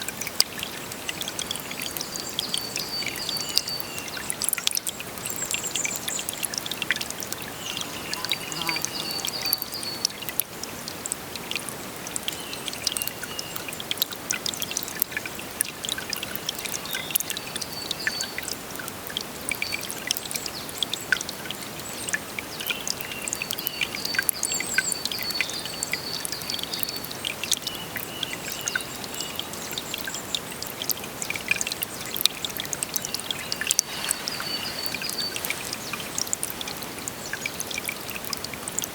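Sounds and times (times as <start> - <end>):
stream water flowing: 0.0 - 38.9.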